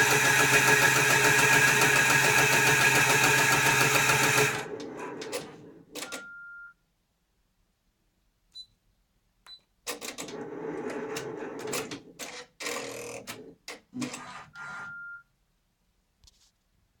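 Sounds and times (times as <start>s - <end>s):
embroidery machine clattering whirr: 0.0s - 5.7s
short steady beep: 6.1s - 6.8s, 14.9s - 15.2s.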